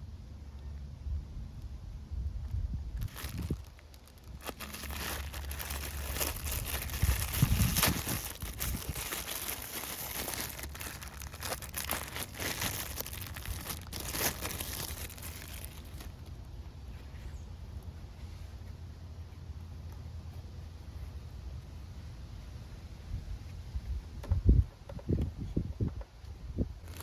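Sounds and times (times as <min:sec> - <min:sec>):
plastic packaging crinkling and tearing: 0:03.0 - 0:16.3.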